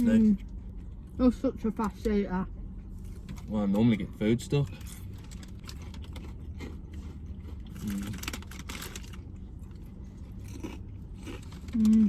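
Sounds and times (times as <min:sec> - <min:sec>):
low steady hum: 0:00.0 - 0:12.0
crisps being crunched: 0:07.7 - 0:09.3.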